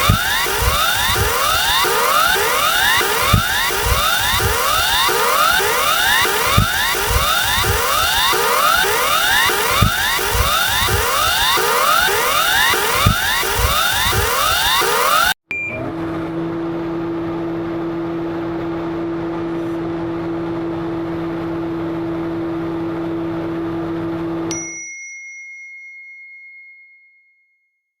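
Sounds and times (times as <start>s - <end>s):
bell ding: 24.5s - 27.6s.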